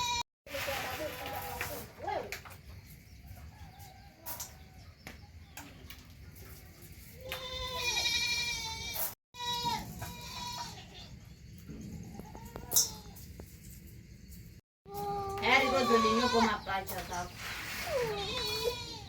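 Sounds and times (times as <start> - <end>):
goat bleating: 7.2 - 11.0, 15.0 - 16.7, 17.9 - 19.0.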